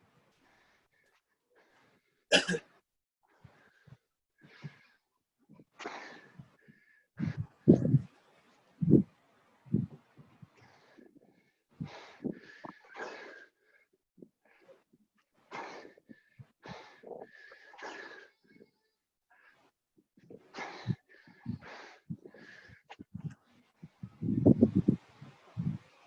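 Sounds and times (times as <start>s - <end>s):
people breathing hard: 3.4s - 5.0s, 5.8s - 8.1s, 9.7s - 14.9s, 19.4s - 26.0s.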